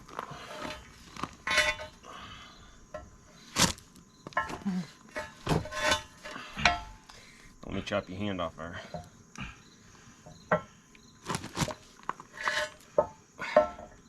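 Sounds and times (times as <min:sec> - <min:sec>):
steel parts clinking and knocking: 0:00.4 - 0:02.0, 0:04.2 - 0:07.1, 0:12.4 - 0:14.0.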